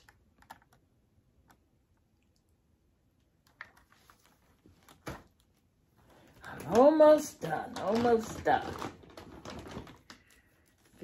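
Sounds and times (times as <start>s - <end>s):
small items tapping and clicking: 6.4s - 11.0s.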